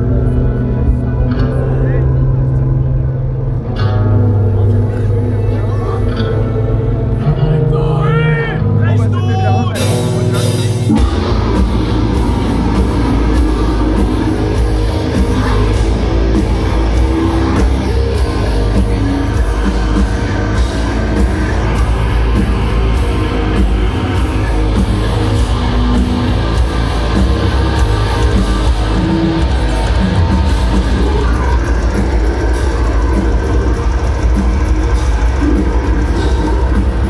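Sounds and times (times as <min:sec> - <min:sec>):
heavy metal band playing: 0:00.0 - 0:37.0.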